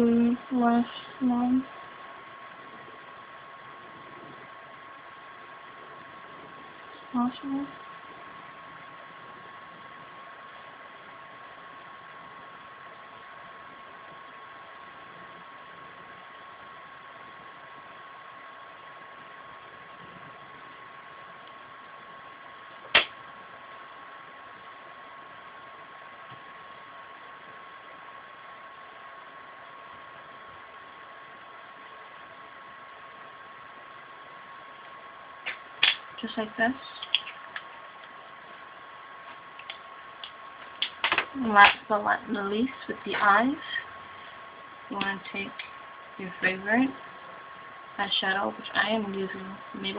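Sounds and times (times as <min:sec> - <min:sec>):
steady background hiss: 0:00.0 - 0:49.9.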